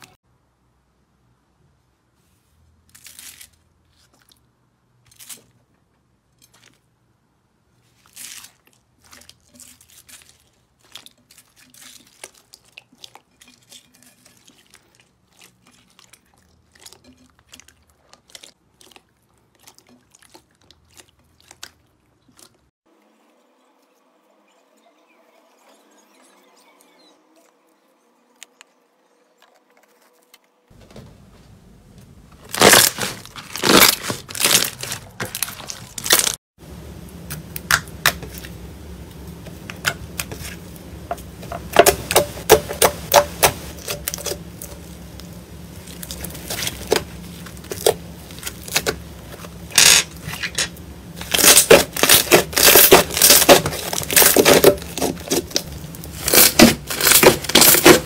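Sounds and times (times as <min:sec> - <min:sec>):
slime squeezed crackling: 0:41.9 - 0:58.0.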